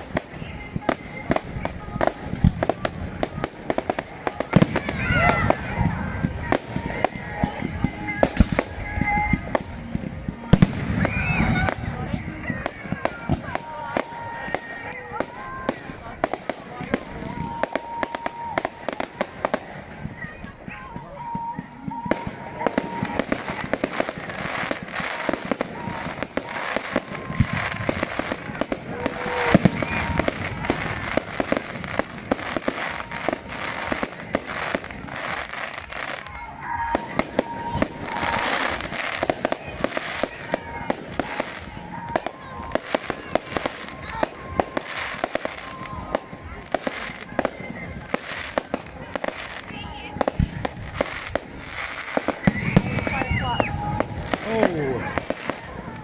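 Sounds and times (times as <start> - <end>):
fireworks bangs and crackles: 0.0 - 56.0
fireworks booms: 0.0 - 56.0.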